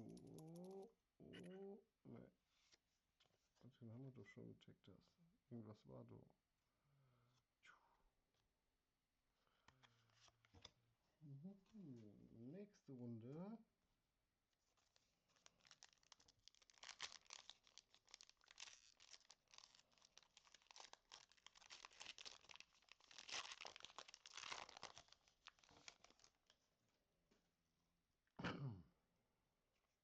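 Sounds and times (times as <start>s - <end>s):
foil wrapper tearing and crinkling: 14.8s - 26.5s.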